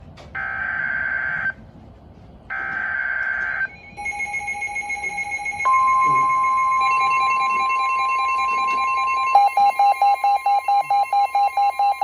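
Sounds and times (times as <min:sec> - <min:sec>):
weather radio alarm tone: 0:02.5 - 0:12.0.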